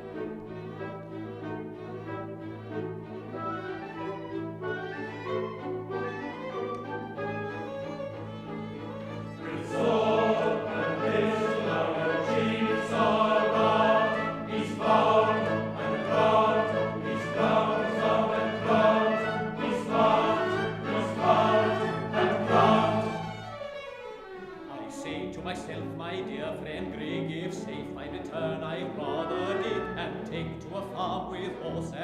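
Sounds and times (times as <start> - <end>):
orchestra playing: 0.0 - 32.0
chorus singing: 9.3 - 23.7, 24.7 - 31.8.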